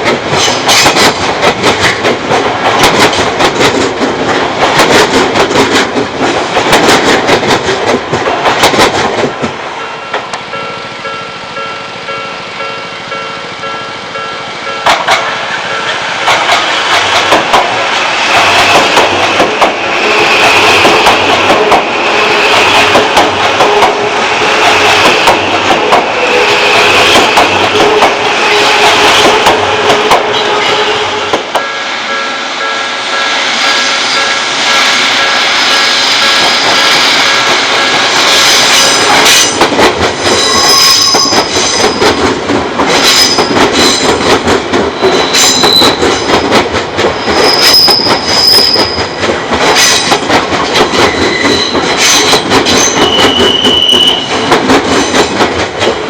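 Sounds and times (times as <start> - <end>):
wheels clacking over rail joints: 0.0 - 31.7, 36.2 - 56.0
train wheels squealing: 33.6 - 37.4, 40.3 - 42.1, 43.0 - 44.1, 45.0 - 46.5, 47.1 - 49.2, 51.0 - 54.5.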